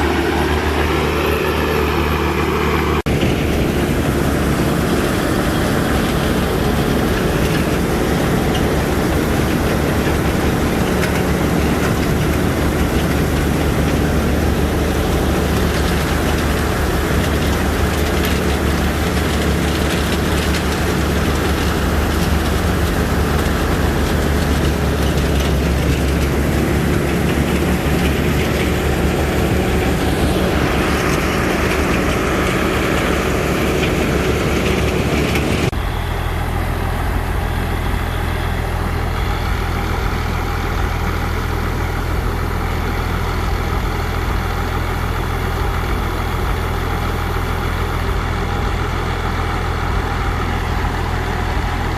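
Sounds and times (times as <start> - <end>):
heavy machine engine running: 0.0 - 51.9
hiss and clatter: 3.0 - 35.9.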